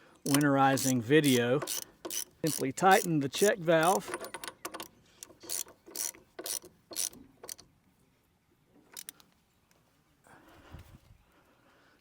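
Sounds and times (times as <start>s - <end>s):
ratchet wrench clicking: 0.3s - 3.2s, 3.8s - 7.6s.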